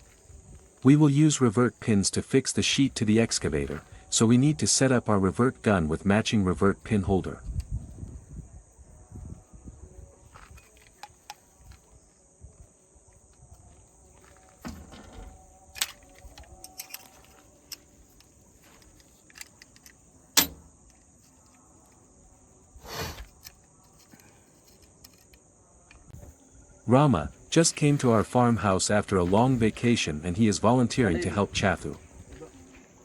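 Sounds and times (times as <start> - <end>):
insect chorus: 0.0 - 33.0
hand tools clicking and knocking: 14.6 - 21.6.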